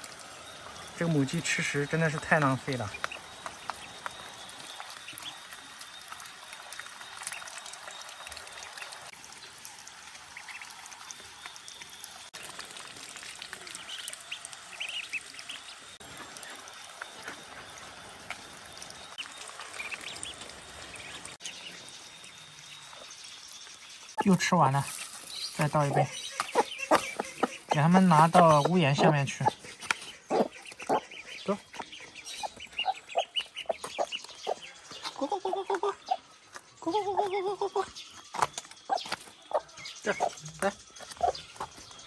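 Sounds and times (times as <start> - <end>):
ducklings quacking and peeping: 13.7 - 16.6, 25.6 - 41.8.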